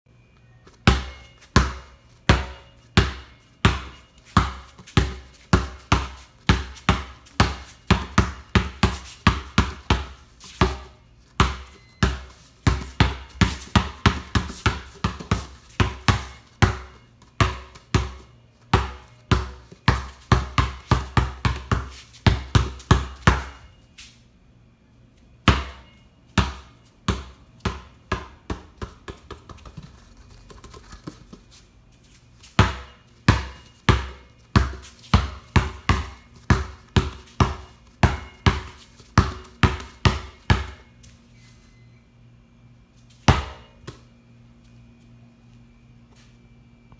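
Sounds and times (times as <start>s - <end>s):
basketball bouncing: 0.8s - 23.7s, 25.5s - 25.8s, 26.4s - 31.3s, 32.6s - 40.9s, 43.3s - 44.0s.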